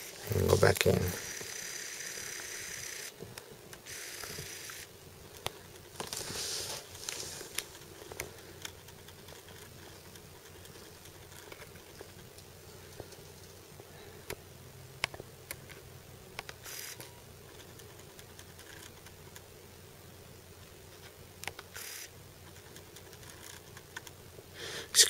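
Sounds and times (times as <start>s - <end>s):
faint hiss: 0.0s - 8.4s, 19.4s - 22.4s, 24.2s - 25.0s.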